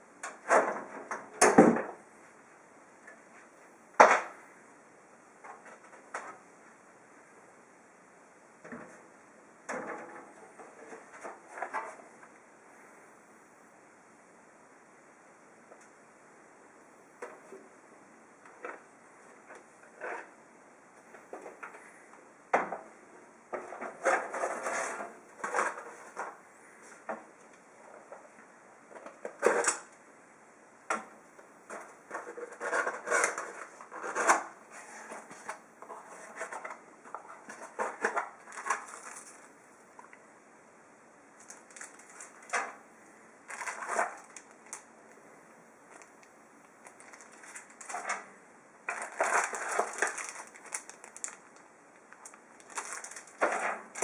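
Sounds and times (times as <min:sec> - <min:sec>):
packaging crinkling and rustling: 0:31.7 - 0:40.1, 0:41.4 - 0:42.8, 0:43.5 - 0:44.9, 0:45.9 - 0:48.3, 0:48.9 - 0:54.0.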